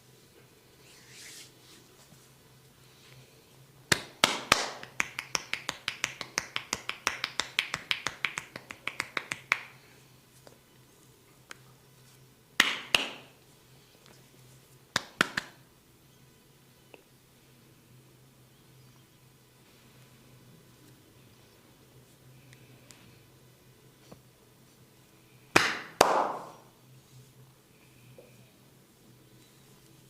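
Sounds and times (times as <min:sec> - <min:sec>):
sharp finger snaps: 0:03.9 - 0:09.7.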